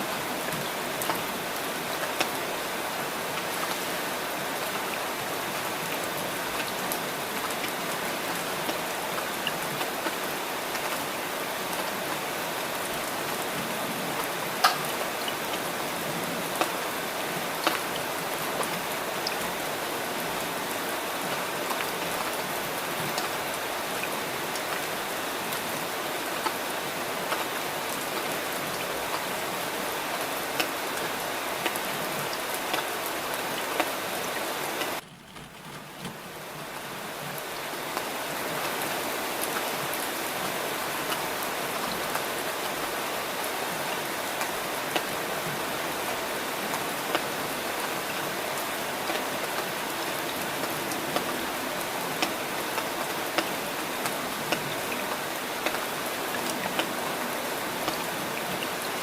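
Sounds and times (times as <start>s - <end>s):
steady rain hiss: 0.0s - 59.0s
raindrops ticking: 34.8s - 37.8s.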